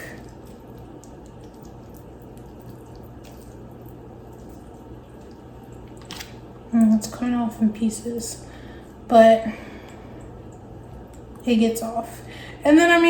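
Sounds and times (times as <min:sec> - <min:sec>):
steady low hum: 0:00.0 - 0:13.0
small ticks: 0:00.2 - 0:05.9.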